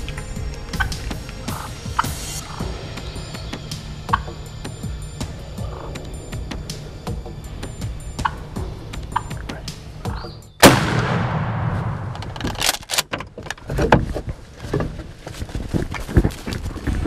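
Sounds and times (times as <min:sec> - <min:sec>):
shotgun shot: 0:10.6 - 0:12.2.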